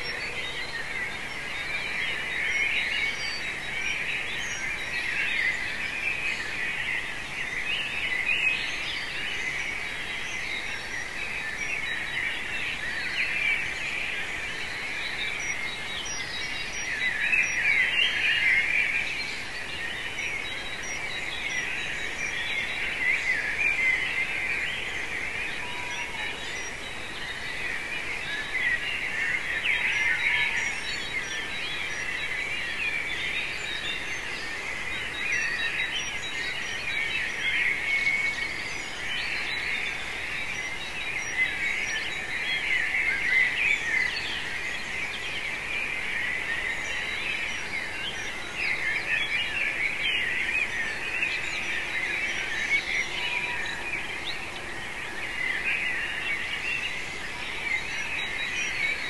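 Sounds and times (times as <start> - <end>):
songbirds chorus: 0.0 - 59.0.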